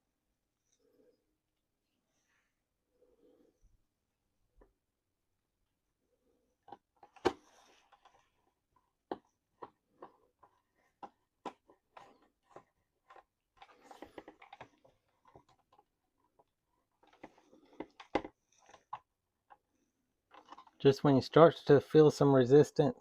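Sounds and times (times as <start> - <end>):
scratchy handling: 9.5 - 19.7.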